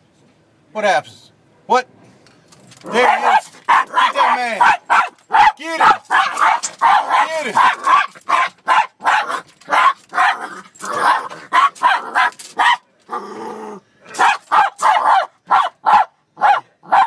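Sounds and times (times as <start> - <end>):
dog barking: 2.9 - 12.9, 14.1 - 17.0
dog growling: 10.1 - 12.4, 13.1 - 14.3.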